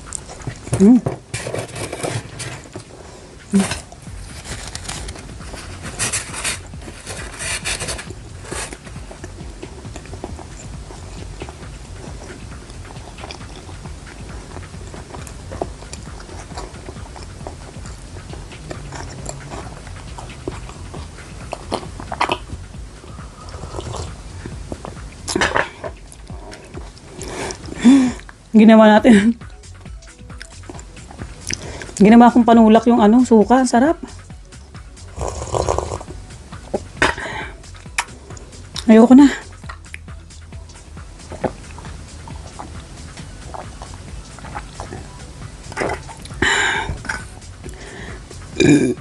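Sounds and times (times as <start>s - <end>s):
chewing fried food: 0.0s - 28.5s, 29.4s - 32.0s, 34.0s - 49.0s
background music: 0.0s - 49.0s.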